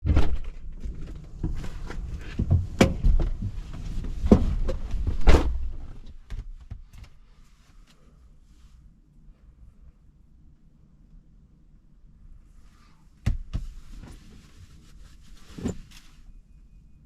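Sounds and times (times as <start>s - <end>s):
knocks and thuds: 0.0s - 6.9s, 13.2s - 13.8s.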